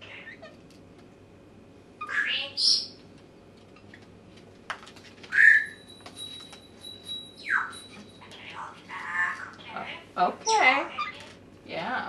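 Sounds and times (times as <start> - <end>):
parrot squawking: 2.0 - 3.0, 5.3 - 5.8, 7.4 - 7.8, 8.4 - 9.8, 10.4 - 11.3.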